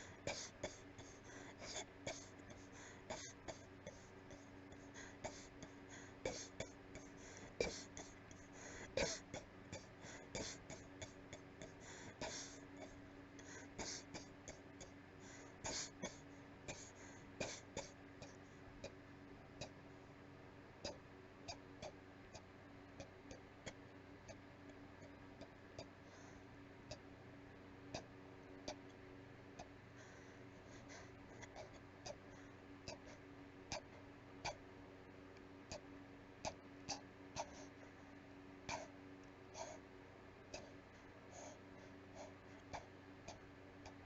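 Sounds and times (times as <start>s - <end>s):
person coughing weakly: 8.9s - 13.0s, 15.7s - 18.0s.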